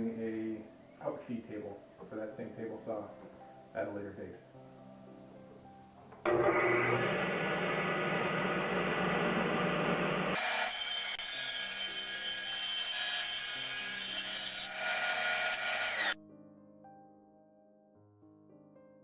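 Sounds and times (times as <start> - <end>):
power saw cutting plywood: 6.3 - 16.2.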